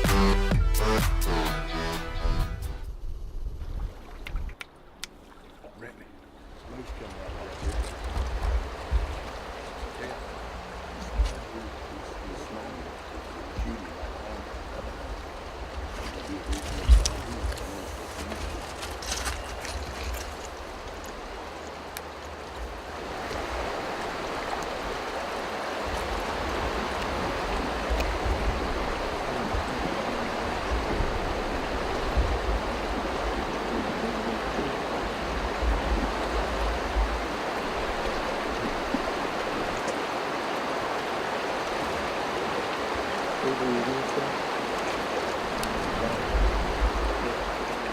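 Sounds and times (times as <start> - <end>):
steady rushing outdoor noise: 2.4 - 47.9
wind buffeting the microphone: 6.9 - 11.7, 13.4 - 21.3, 22.4 - 40.9, 44.8 - 47.9.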